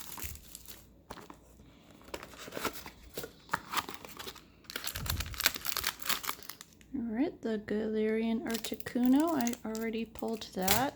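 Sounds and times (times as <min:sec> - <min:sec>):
plastic wrapping crinkling and tearing: 0:00.0 - 0:01.4, 0:02.0 - 0:06.9, 0:08.4 - 0:10.9.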